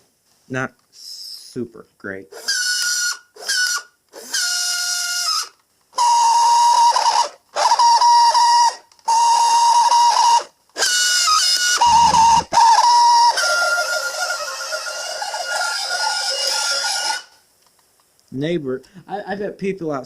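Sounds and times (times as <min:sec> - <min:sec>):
toy car motor whining: 0:02.4 - 0:17.3.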